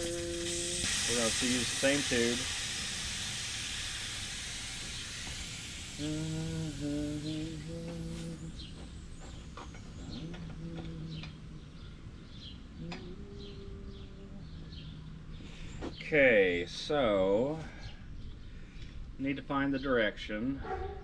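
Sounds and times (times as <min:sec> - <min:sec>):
man humming: 0:00.0 - 0:01.4, 0:05.8 - 0:08.8, 0:10.0 - 0:11.9, 0:12.7 - 0:14.8
hiss: 0:00.0 - 0:10.2
small birds chirping: 0:06.0 - 0:16.2.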